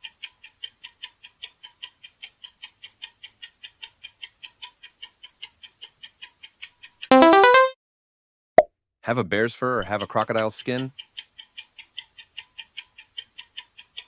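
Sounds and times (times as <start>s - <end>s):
clock ticking: 9.8s - 14.0s.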